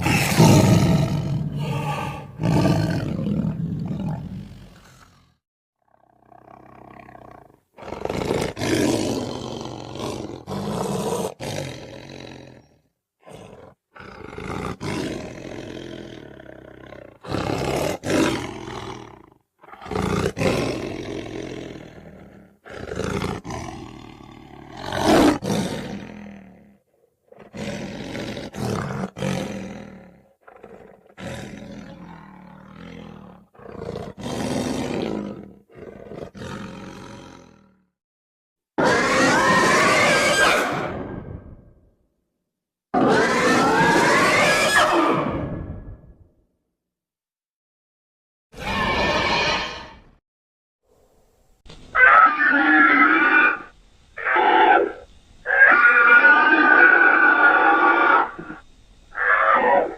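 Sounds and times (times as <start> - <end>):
monster roars: 0.0 - 5.4, 48.6 - 50.1.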